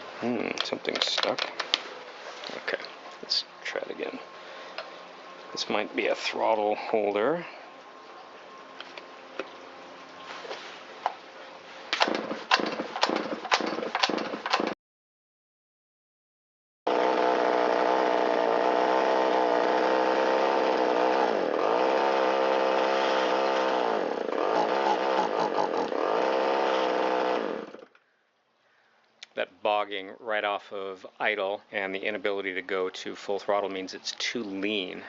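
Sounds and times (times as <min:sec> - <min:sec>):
chainsaw engine running: 0:11.9 - 0:14.8, 0:16.9 - 0:27.9.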